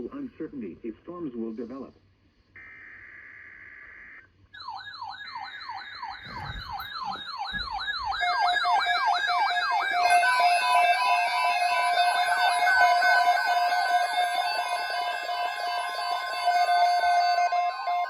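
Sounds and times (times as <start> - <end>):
electronic siren sweeping: 2.6 - 18.0
steady alarm tones: 2.6 - 18.0
buzzing data tones: 5.3 - 8.5.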